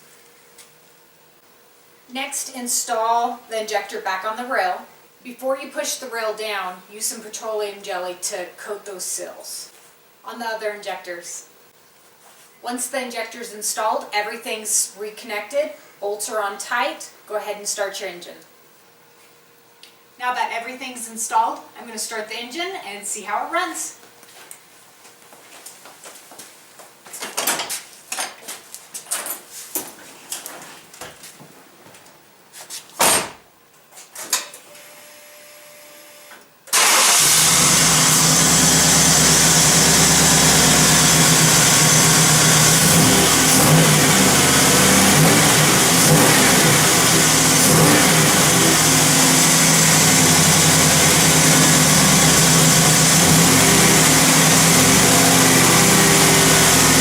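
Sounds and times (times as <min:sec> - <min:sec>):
car engine starting and running: 0:36.7 - 0:57.0.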